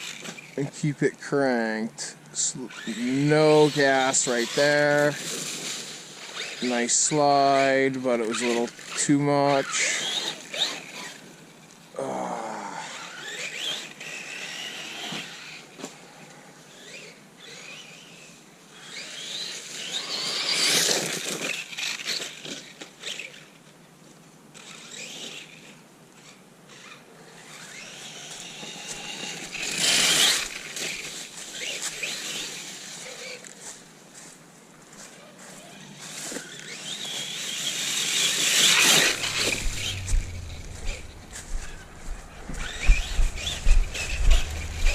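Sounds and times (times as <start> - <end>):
rc truck motor whining: 2.5 - 23.7, 24.5 - 33.6, 35.1 - 44.9
tyre and drivetrain noise: 35.4 - 44.9.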